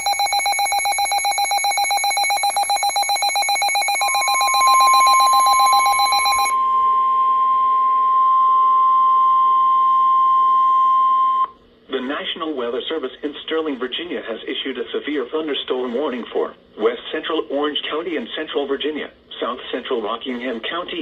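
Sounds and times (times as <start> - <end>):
fast-pulsing electronic alert ringing: 0.0 - 6.6
steady pure warning tone: 0.0 - 12.3.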